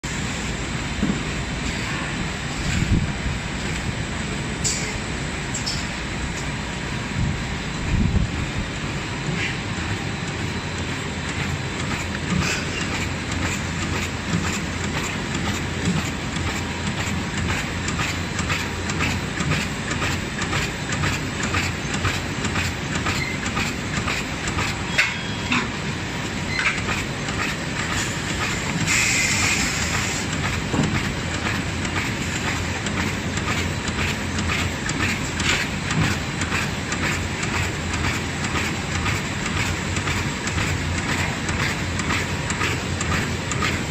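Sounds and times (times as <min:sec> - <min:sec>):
bag cutting machine droning: 0:06.7 - 0:43.9
rapid cutting clatter: 0:10.3 - 0:24.8, 0:26.7 - 0:43.9.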